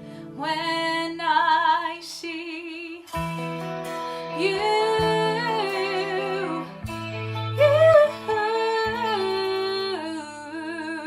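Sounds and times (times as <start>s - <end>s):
instrumental backing track: 3.0s - 10.3s.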